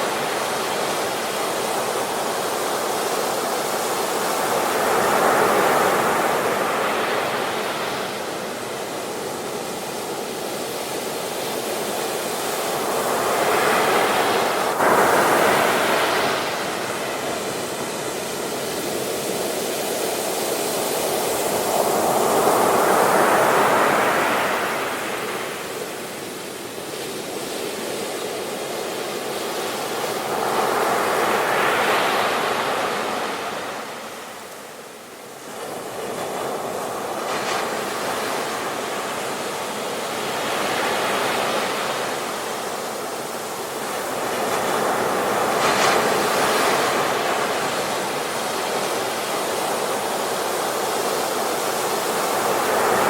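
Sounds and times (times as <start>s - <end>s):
sea waves breaking on shore: 0.0s - 53.0s.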